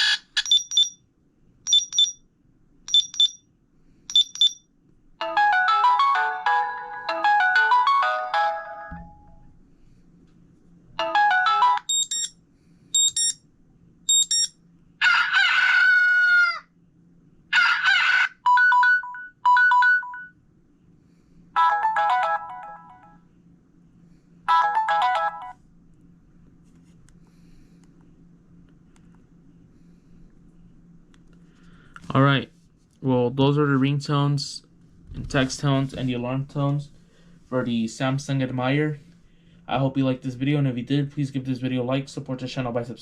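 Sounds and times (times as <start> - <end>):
phone alarm tones: 0.0 - 1.0, 1.7 - 2.2, 2.9 - 3.4, 4.1 - 4.6, 11.0 - 12.4, 13.0 - 13.4, 14.1 - 14.6
rooster crow: 15.0 - 16.8, 17.5 - 18.4.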